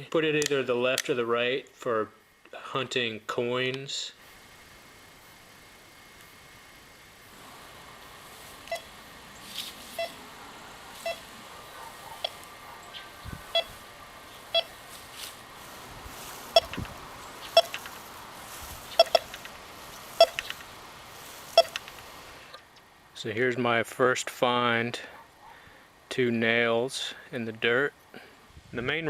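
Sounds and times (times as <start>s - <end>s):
metal detector beeps: 8.7s - 8.9s, 9.9s - 10.2s, 11.0s - 11.2s, 14.5s - 14.7s, 16.5s - 17.9s, 18.9s - 19.5s, 20.2s - 20.6s, 21.5s - 22.0s.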